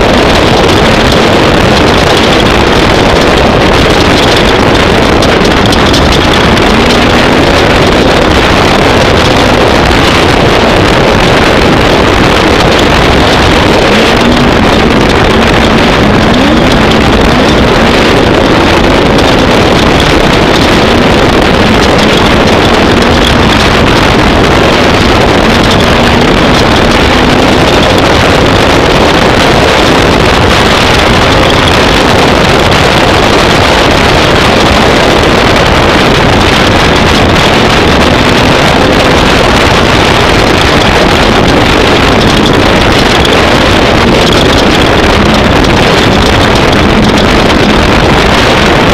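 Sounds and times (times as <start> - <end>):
race vehicle engine revving: 0.0 - 33.0
wind on microphone: 0.0 - 48.9.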